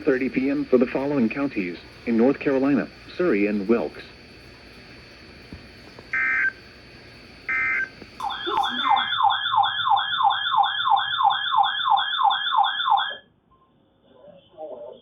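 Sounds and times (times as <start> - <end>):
electronic siren alert tone: 7.5 - 13.2.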